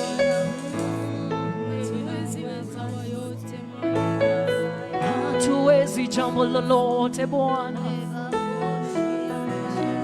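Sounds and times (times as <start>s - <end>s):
church band instrumental chords: 0.0s - 10.0s
people singing: 0.0s - 10.0s.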